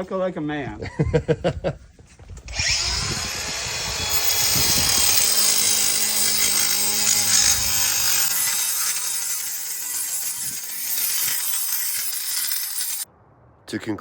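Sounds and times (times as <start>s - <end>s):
grinder motor hum: 2.5s - 13.0s
angle grinder cutting: 2.5s - 13.1s.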